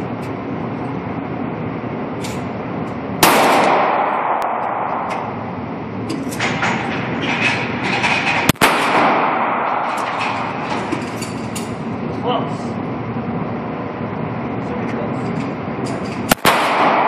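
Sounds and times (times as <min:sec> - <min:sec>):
steady background hum: 0:00.0 - 0:17.0
pistol shots with echo: 0:03.2 - 0:05.3, 0:08.4 - 0:10.0, 0:16.3 - 0:17.0.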